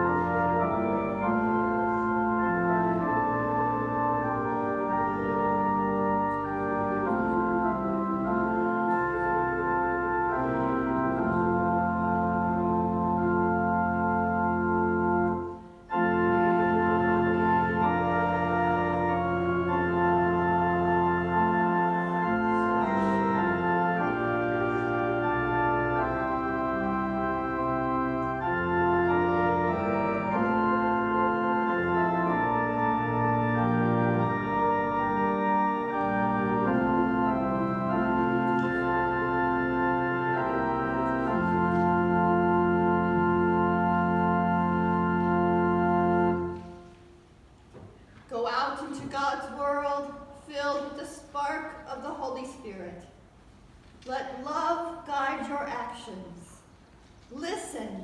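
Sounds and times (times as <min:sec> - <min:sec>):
church organ playing a hymn: 0:00.0 - 0:47.4.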